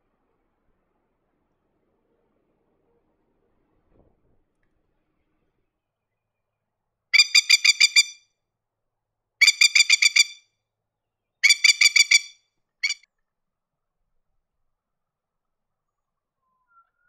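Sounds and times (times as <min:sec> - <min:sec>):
lapwing chattering call: 0:07.2 - 0:08.2, 0:09.4 - 0:10.4, 0:11.4 - 0:13.0.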